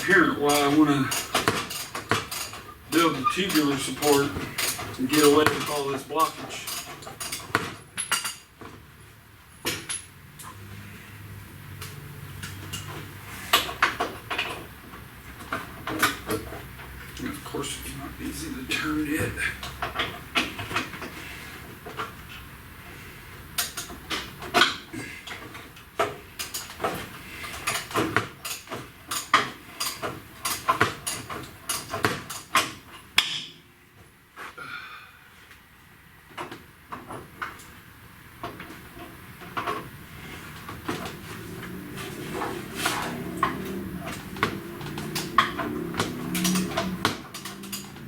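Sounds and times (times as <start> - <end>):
metallic clicks of hand tools: 43.4 - 48.0.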